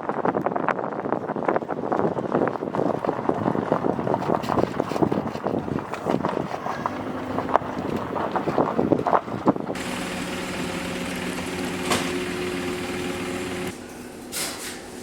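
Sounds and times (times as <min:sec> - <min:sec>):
mechanical hum with low drone: 0:09.8 - 0:15.0.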